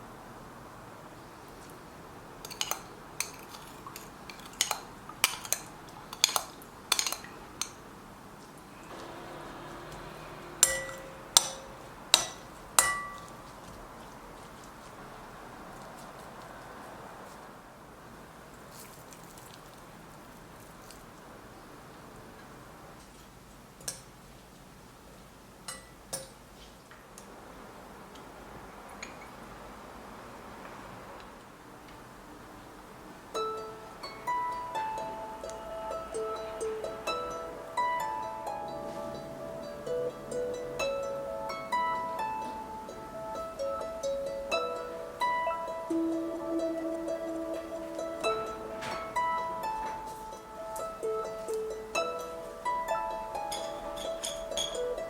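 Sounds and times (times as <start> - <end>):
utensils and dishes clinking: 2.4 - 7.8, 8.8 - 13.5, 33.4 - 55.0.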